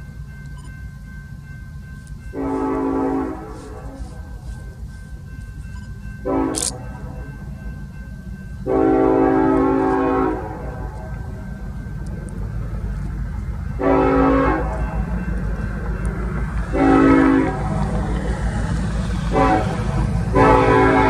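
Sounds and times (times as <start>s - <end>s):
low rumble of moving train: 0.0s - 21.0s
train horn blasts: 2.3s - 4.6s, 6.2s - 7.3s, 8.6s - 11.2s, 13.7s - 15.2s, 16.6s - 17.8s, 19.2s - 21.0s.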